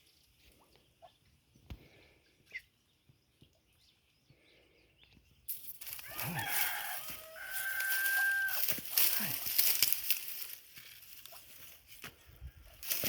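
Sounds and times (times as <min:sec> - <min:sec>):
faint bird chirps: 0:00.4 - 0:05.5
rooster crowing: 0:06.0 - 0:08.7.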